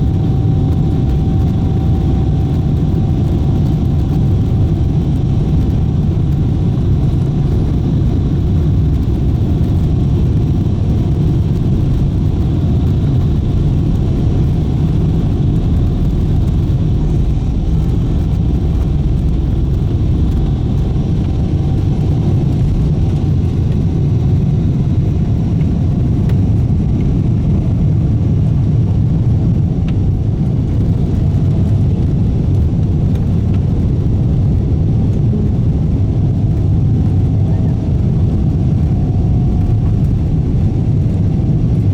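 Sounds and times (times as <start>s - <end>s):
faint hum: 0.0s - 41.9s
jet engine rumble in cabin: 0.0s - 41.9s.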